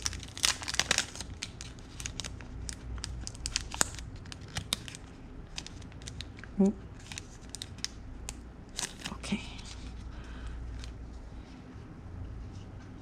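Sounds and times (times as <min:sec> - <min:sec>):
packaging crinkling and tearing: 0:00.0 - 0:08.0, 0:08.7 - 0:10.0.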